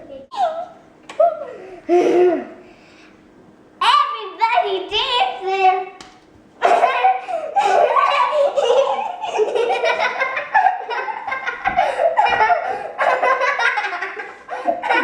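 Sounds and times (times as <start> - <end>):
children laughing and giggling: 0.2 - 2.6, 6.6 - 15.0.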